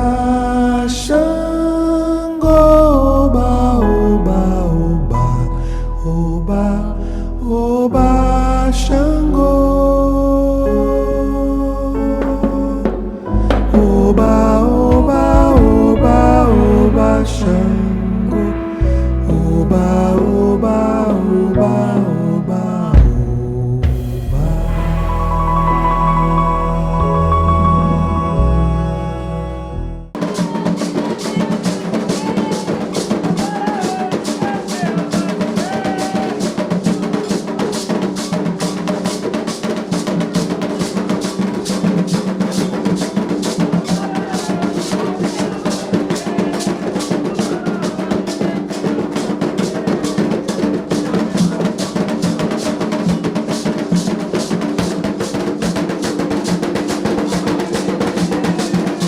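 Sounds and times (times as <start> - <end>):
soft sustained music: 0.0 - 30.1
hand drums fast rhythm: 12.2 - 17.6, 30.2 - 59.0.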